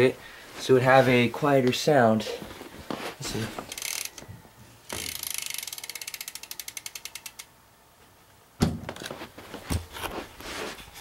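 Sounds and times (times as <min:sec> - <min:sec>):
bike hub ticking: 0:03.7 - 0:04.2, 0:04.9 - 0:07.5.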